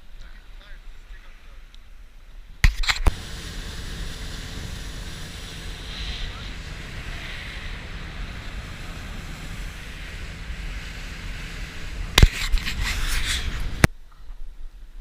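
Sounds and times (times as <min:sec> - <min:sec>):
water washing around boat: 0:03.1 - 0:13.8
wind buffeting microphone: 0:03.1 - 0:13.9.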